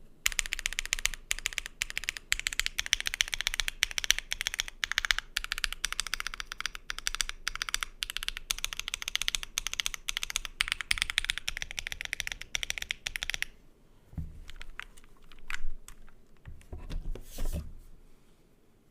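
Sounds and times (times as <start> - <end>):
mechanical keyboard typing: 0.2 - 13.5, 14.4 - 16.2.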